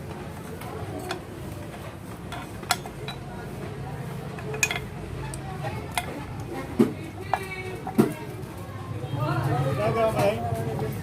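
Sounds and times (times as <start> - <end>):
metal tools clinking: 2.3 - 3.3, 4.3 - 6.2.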